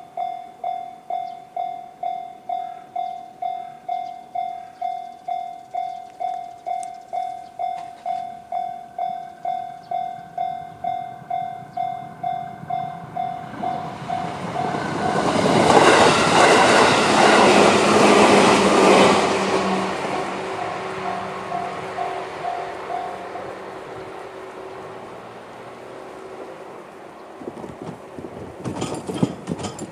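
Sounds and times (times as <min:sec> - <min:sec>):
level crossing bell ringing: 0:00.0 - 0:15.6, 0:21.0 - 0:23.6
electric train passing: 0:00.0 - 0:29.9.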